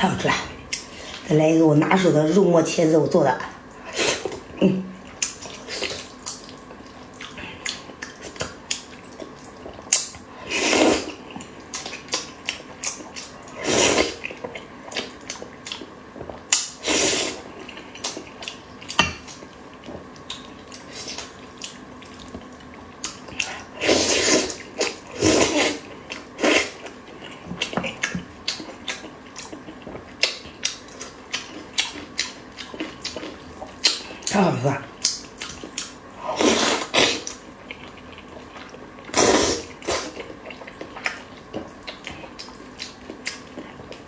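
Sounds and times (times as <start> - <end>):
wet chewing and lip-smacking: 5.0 - 10.3, 17.4 - 23.7, 25.7 - 34.4, 35.0 - 36.1, 39.7 - 44.0.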